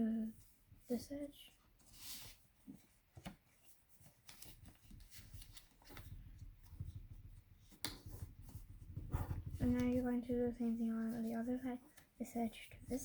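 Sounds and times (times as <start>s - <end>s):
paper rustling and crinkling: 1.7s - 13.0s.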